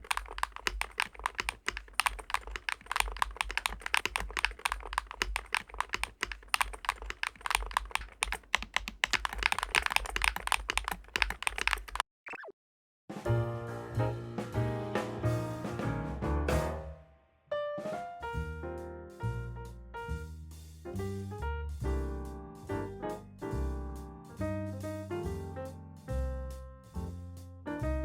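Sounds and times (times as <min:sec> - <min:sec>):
fast keyboard typing: 0:00.0 - 0:12.0.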